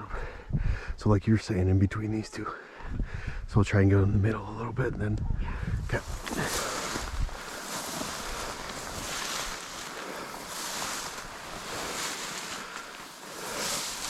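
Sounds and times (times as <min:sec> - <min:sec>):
water swishing in swells: 0:06.0 - 0:14.0.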